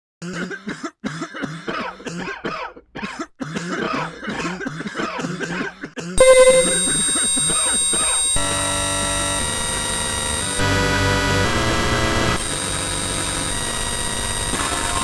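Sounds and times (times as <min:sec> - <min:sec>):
person coughing: 0:00.2 - 0:06.2
electronic held tones: 0:06.2 - 0:11.6.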